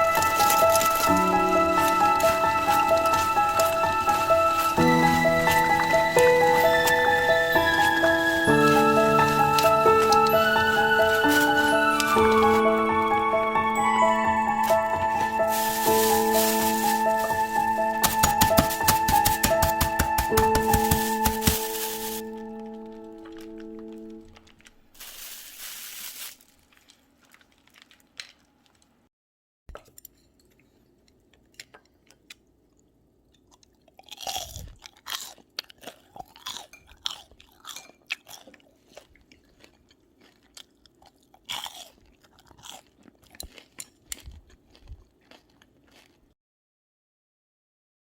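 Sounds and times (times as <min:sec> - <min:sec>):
person crunching fried food: 0:23.2 - 0:28.9, 0:30.6 - 0:46.4.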